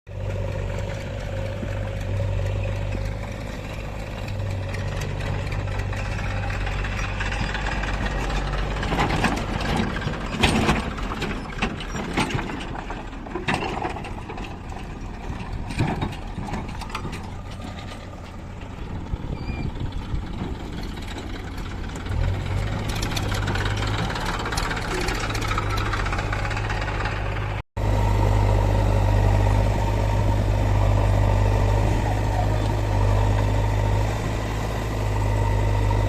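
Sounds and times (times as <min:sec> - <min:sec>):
diesel engine of heavy machinery: 0:00.1 - 0:36.0
irregular knocks and clatters: 0:00.3 - 0:19.2.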